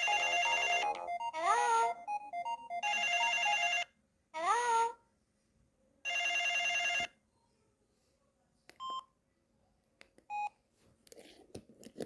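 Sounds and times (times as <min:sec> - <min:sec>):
buzzy phone ringtone: 0:00.0 - 0:03.9, 0:06.1 - 0:07.1.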